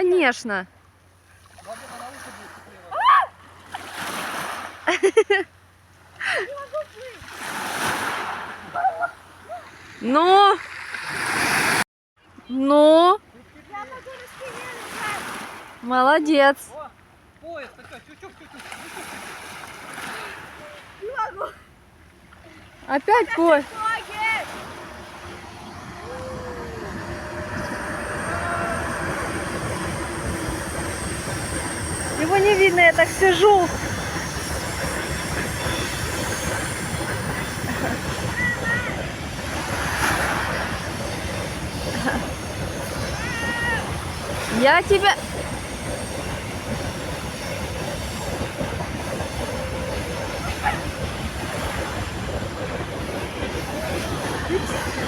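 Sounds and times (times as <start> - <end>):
train rumbling past: 21.8 - 55.0
thin high whine: 23.1 - 55.0.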